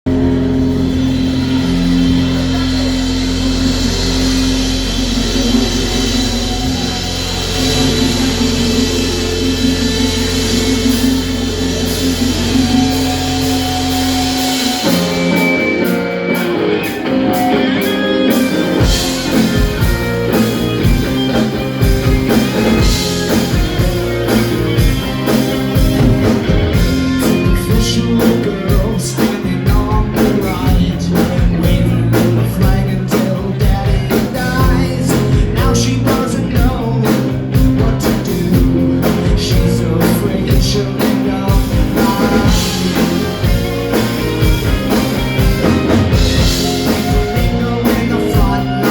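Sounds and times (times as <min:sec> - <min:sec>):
drums and bass beat: 0:00.0 - 0:48.9
sustained guitar chords: 0:00.1 - 0:32.7, 0:37.3 - 0:48.9.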